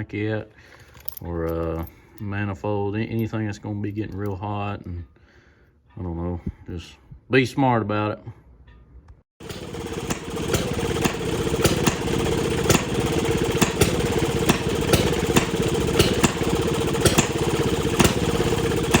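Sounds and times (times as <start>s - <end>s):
small engine running: 9.4s - 19.0s.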